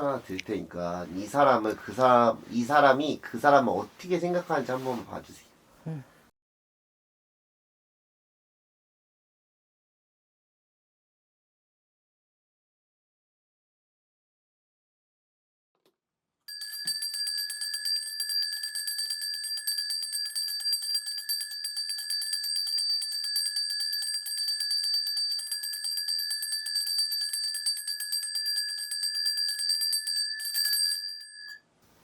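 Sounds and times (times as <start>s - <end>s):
small bells jingling: 16.5s - 31.6s.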